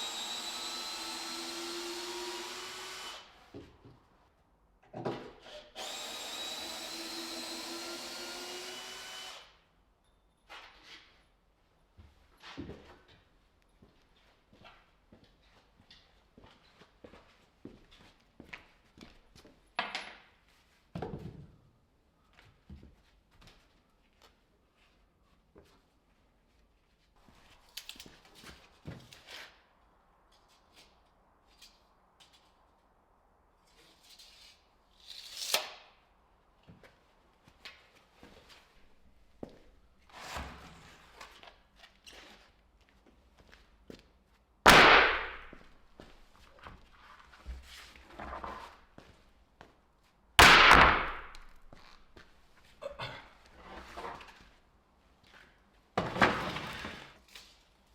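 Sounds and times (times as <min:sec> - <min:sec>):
power tool motor spinning: 0:00.0 - 0:03.4, 0:05.8 - 0:09.5.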